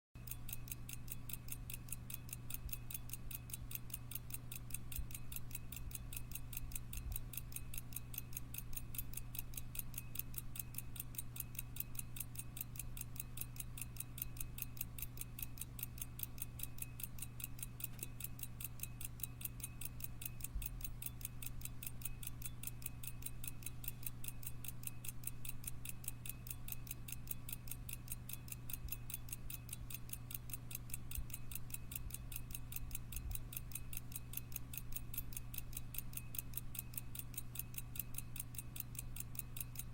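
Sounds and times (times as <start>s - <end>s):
pocket watch ticking: 0.2s - 39.9s
steady low hum: 0.2s - 39.9s.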